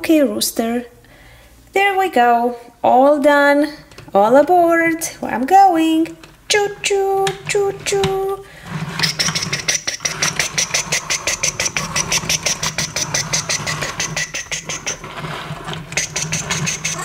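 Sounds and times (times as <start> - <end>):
toy train motor whining: 8.6 - 17.0.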